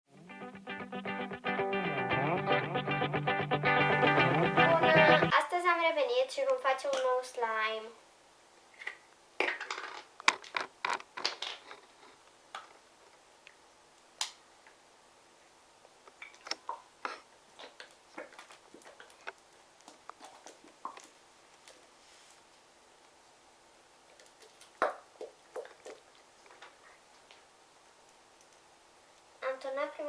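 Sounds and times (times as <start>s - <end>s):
plastic containers clicking and crinkling: 8.8s - 12.8s.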